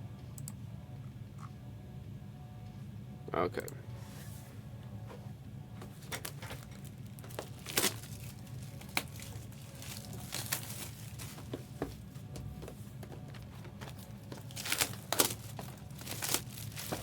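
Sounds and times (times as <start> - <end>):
steady low hum: 0.0 - 17.0
plastic packaging crinkling and tearing: 6.1 - 11.5, 13.2 - 17.0.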